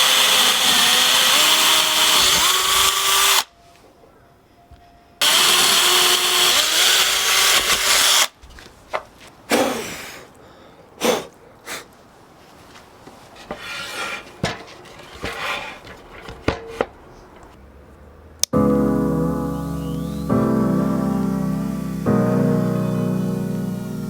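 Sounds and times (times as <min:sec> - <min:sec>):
power tool whining: 0:00.0 - 0:03.5, 0:05.2 - 0:08.3, 0:21.6 - 0:24.0
short scraping sounds: 0:13.3 - 0:15.9.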